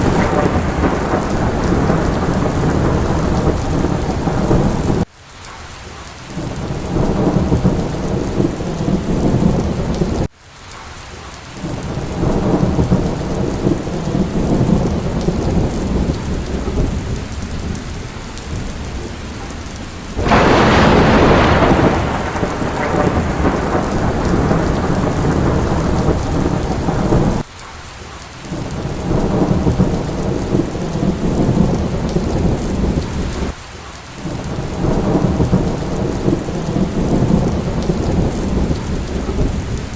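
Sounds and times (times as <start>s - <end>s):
loud thunderclap: 0.0s - 5.0s, 20.1s - 27.5s, 28.6s - 33.6s, 34.3s - 39.9s
rolling thunder: 0.0s - 5.1s, 11.6s - 27.5s, 28.6s - 33.6s, 34.2s - 39.9s
steady rain: 0.0s - 39.9s.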